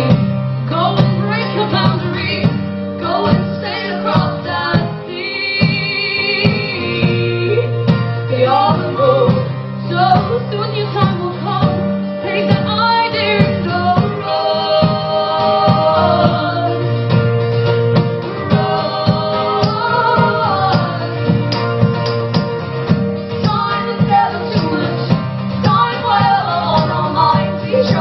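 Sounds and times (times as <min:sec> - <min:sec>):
strummed acoustic guitar: 0:00.0 - 0:28.0
voices singing wordless harmonies: 0:00.0 - 0:28.0.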